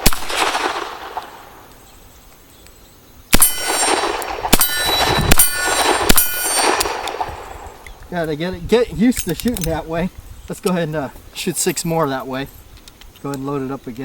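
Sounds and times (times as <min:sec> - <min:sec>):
metallic ringing clang: 0:03.4 - 0:07.0.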